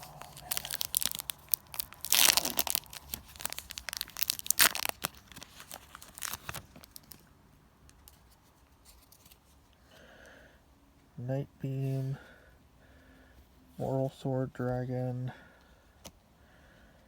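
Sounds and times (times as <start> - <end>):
foil wrapper crinkling: 0.0 - 7.3
foil wrapper tearing: 0.0 - 7.3.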